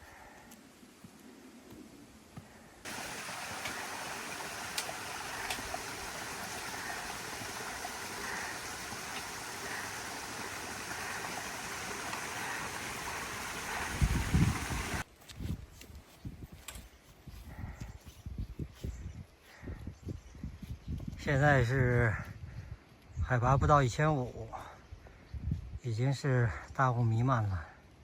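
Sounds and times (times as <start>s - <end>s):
low rumble of wind gust: 2.9s - 15.6s.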